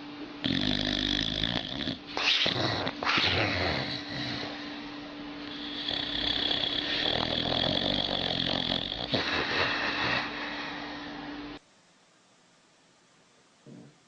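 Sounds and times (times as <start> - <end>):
steady low hum: 0.0 - 14.0
dog snoring: 0.4 - 4.8, 5.4 - 10.5.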